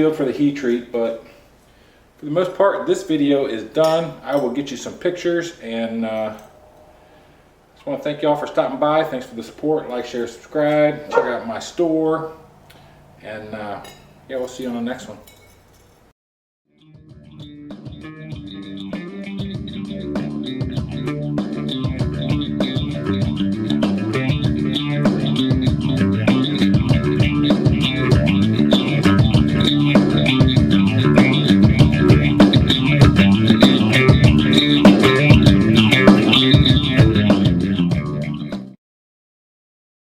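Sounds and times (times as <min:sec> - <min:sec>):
guitar and bass music with beat: 0:16.9 - 0:38.8.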